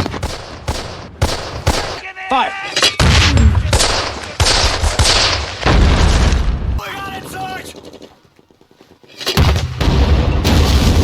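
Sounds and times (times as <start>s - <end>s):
gunshots: 0.0s - 2.0s, 2.9s - 6.8s
heavy gunfire: 0.0s - 2.0s, 3.0s - 6.5s
explosions: 3.0s - 6.8s, 9.4s - 11.0s.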